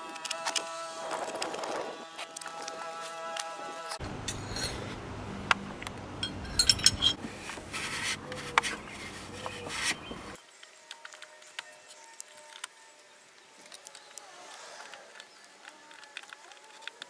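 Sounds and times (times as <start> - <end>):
faint steady background noise: 0.0 - 17.0
hand tools and metal parts clinking: 4.0 - 10.4.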